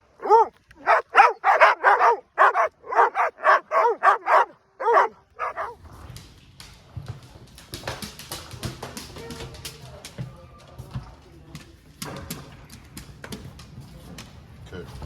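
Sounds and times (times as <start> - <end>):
dog barking: 0.0 - 5.8.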